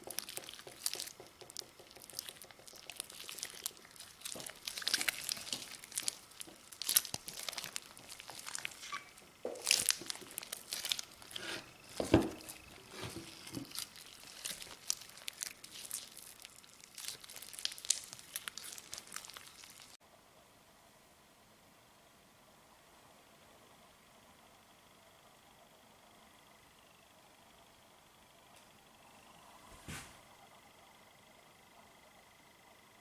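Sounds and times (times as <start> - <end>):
slime crackling and popping: 0.0 - 20.0
slime squelch: 0.0 - 20.0.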